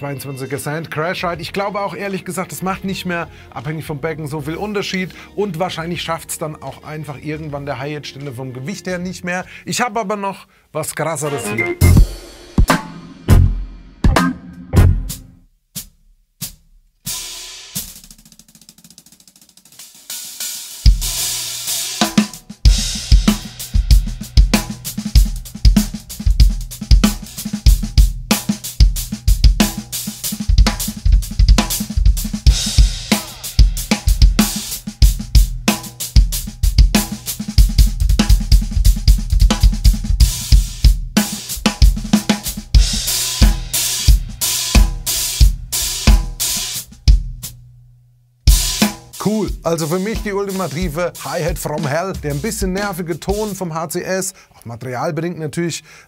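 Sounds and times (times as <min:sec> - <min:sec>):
drum kit groove: 0:11.3 - 0:47.8, 0:48.4 - 0:54.0
washy hi-hats: 0:15.8 - 0:47.6, 0:48.5 - 0:53.8.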